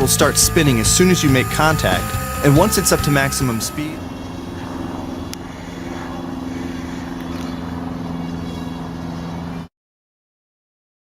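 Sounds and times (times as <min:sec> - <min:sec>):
small electric motor buzzing: 0:00.0 - 0:06.6.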